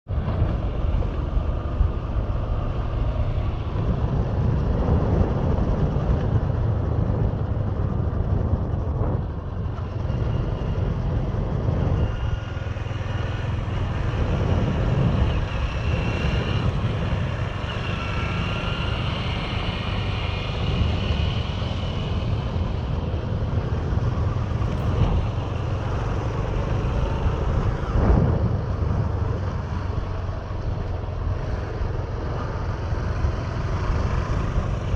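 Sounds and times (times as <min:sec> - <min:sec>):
vehicle road and engine rumble: 0:00.0 - 0:34.9.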